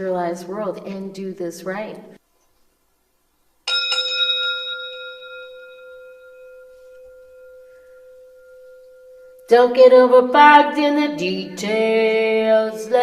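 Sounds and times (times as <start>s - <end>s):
meditation bell ringing: 3.6s - 10.2s.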